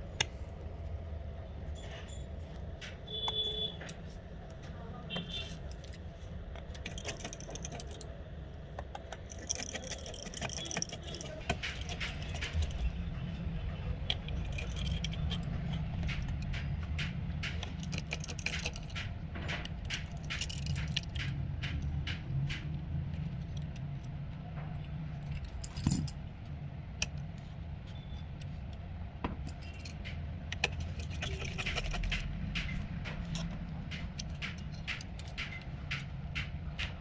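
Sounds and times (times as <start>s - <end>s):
screwdriver clicking on tiny screws: 8.8s - 13.0s, 14.0s - 24.2s, 29.5s - 37.0s.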